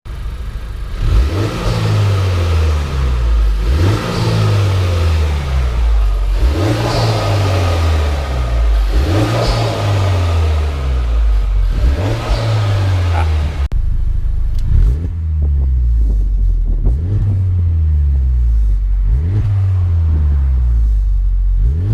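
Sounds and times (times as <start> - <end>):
car engine revving: 0.1 - 21.9.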